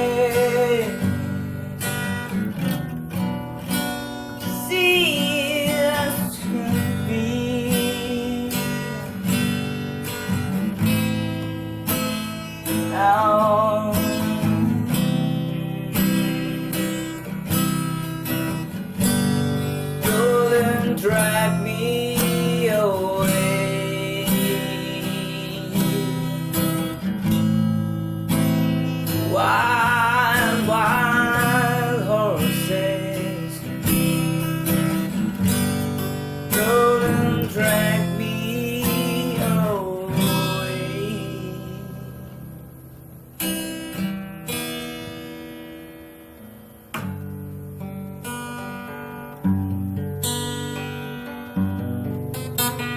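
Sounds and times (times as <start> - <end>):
person singing: 0.0 - 1.5, 4.4 - 9.6, 12.7 - 15.3, 19.9 - 26.8, 28.8 - 35.4, 36.4 - 42.6
acoustic guitar strumming chords: 0.0 - 52.9.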